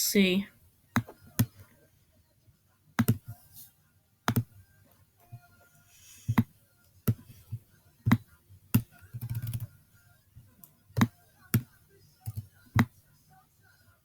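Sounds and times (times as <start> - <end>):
mouse and keyboard clicks: 3.0 - 3.4, 4.3 - 4.5.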